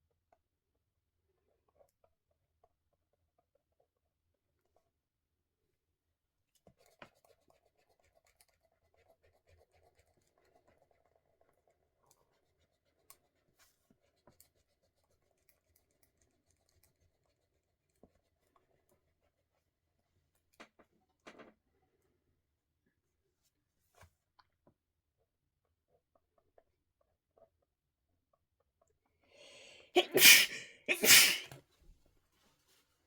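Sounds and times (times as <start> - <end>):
pen scratching on paper: 6.8 - 11.4.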